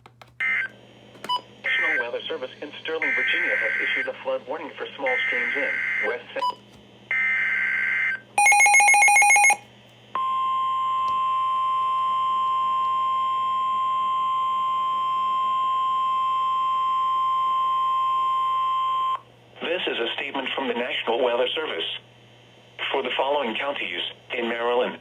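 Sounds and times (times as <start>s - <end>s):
steady warning alarm tone: 5.0s - 9.6s.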